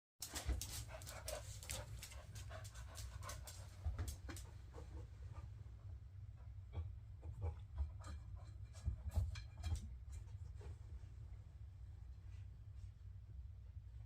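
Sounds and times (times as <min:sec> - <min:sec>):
dog panting: 0:00.2 - 0:05.6
low steady hum: 0:00.2 - 0:14.0.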